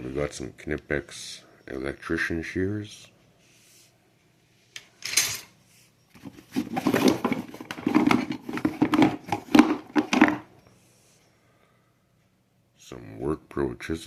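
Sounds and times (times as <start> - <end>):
metal tools clinking: 5.0 - 5.6.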